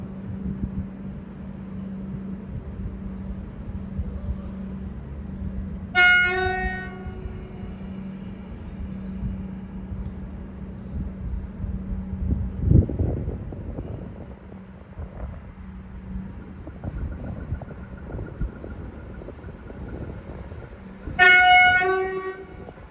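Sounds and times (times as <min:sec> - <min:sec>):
train humming: 0:00.0 - 0:22.9
train rumbling: 0:00.0 - 0:22.9
electric train horn blast: 0:05.9 - 0:07.9, 0:21.0 - 0:22.9.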